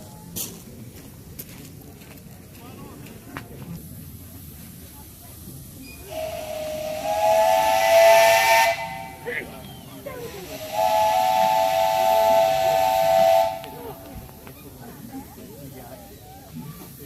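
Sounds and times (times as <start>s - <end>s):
steam locomotive chime whistle: 5.9s - 14.2s.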